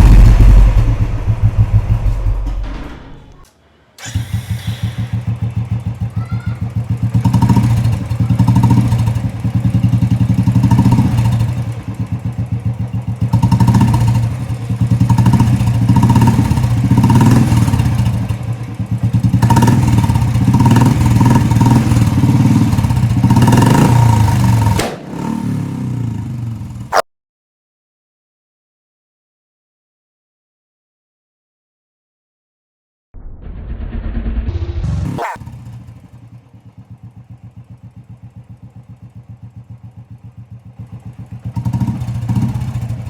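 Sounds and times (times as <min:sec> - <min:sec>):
motorcycle engine revving: 0:00.0 - 0:03.4, 0:04.0 - 0:27.0, 0:33.5 - 0:43.0
sharp bang: 0:00.0 - 0:03.5, 0:33.2 - 0:35.8
exhaust crackling pops: 0:00.0 - 0:04.2, 0:24.6 - 0:25.6.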